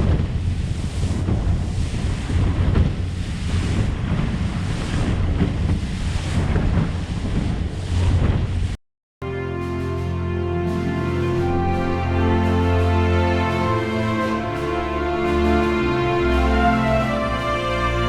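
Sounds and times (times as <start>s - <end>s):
wind buffeting microphone: 0.0s - 8.8s
rushing water: 0.0s - 18.0s.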